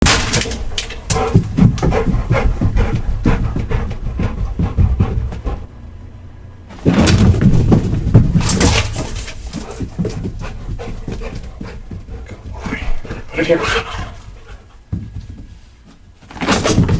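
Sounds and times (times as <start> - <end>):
dog paw footfalls: 0.0 - 5.7, 6.7 - 16.9
dog panting: 0.8 - 5.7, 8.9 - 15.4.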